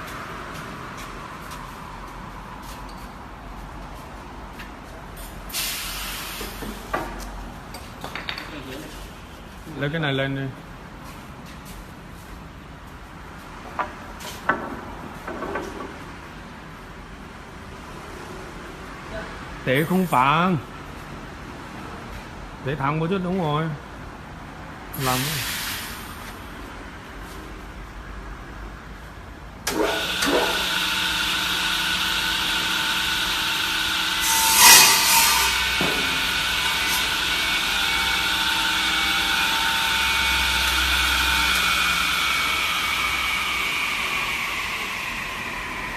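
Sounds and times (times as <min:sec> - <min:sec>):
saw motors whining: 0:29.8 - 0:45.9.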